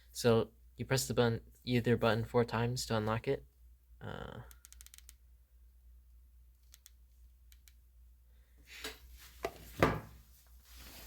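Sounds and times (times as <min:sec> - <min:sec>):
handling and rubbing noise: 0:08.7 - 0:11.0.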